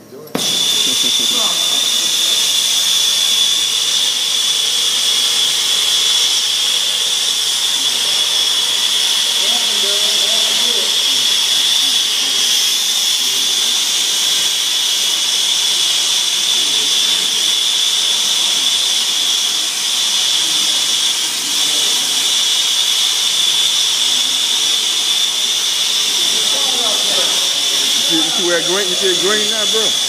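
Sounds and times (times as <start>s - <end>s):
gas torch flame hissing: 0.3s - 30.0s.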